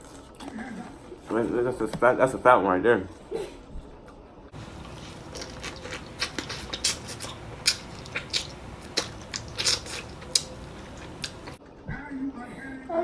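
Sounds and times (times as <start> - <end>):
wet chewing and lip smacks: 4.6 - 11.6.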